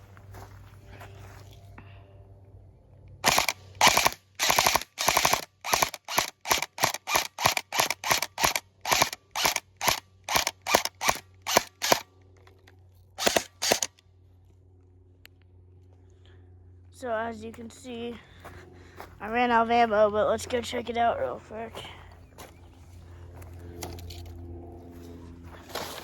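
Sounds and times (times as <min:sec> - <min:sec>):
airsoft gun shots: 0:03.2 - 0:12.0, 0:13.2 - 0:13.9.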